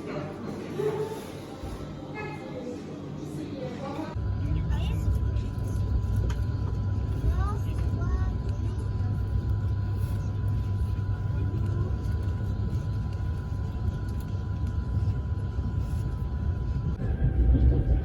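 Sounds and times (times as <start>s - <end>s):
thin steady whine: 0.0s - 18.0s
vehicle low rumble: 4.1s - 18.0s.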